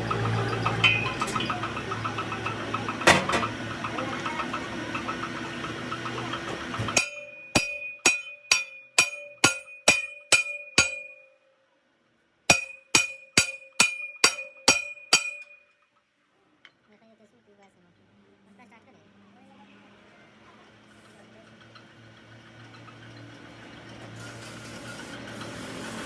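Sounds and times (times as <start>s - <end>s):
hammer striking metal: 0.0s - 3.6s, 6.7s - 11.4s, 12.5s - 15.8s
workshop noise: 0.0s - 11.4s, 12.5s - 16.0s, 20.6s - 26.0s.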